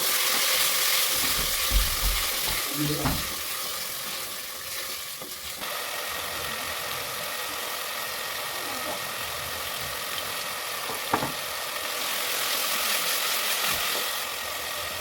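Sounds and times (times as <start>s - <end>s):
vegetables sizzling in a pot: 0.0s - 15.0s
stirring knocks: 1.2s - 3.4s.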